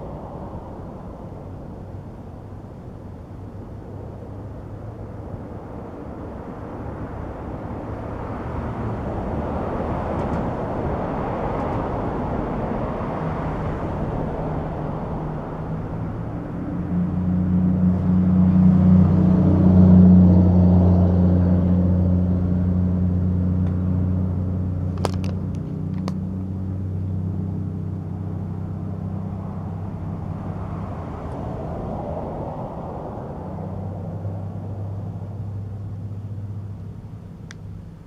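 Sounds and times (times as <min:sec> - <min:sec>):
vehicle engine drone: 0:00.0 - 0:38.0.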